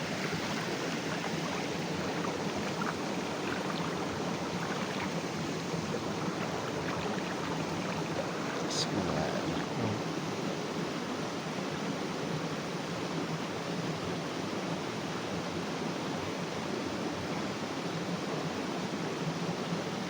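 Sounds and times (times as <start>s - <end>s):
small river rushing: 0.0s - 20.0s.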